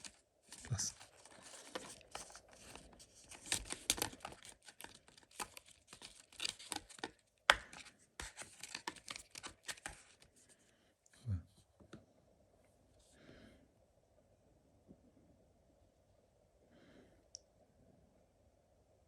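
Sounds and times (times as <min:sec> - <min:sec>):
packaging rustling and crinkling: 0:00.0 - 0:10.3.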